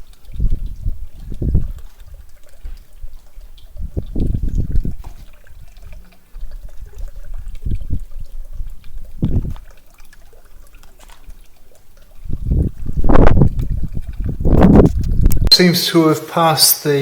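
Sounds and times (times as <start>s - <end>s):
wind rumbling on camera microphone: 0.0s - 9.8s, 12.0s - 15.5s.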